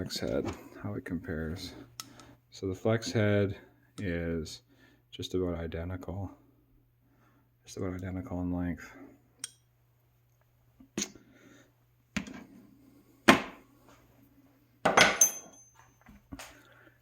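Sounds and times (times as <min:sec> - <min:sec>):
metal wrenches clanking: 0:14.9 - 0:15.8.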